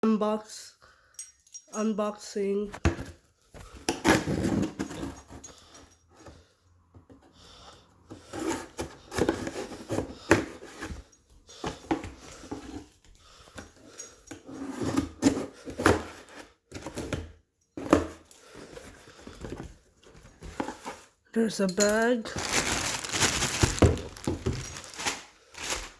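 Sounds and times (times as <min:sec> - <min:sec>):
package being opened by hand: 0:22.3 - 0:25.9.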